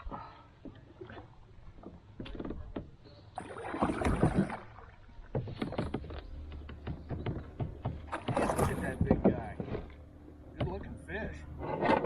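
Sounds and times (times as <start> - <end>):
water splashing: 3.3 - 6.0, 7.8 - 10.8
knocks on a kayak: 5.3 - 9.9, 10.6 - 10.9.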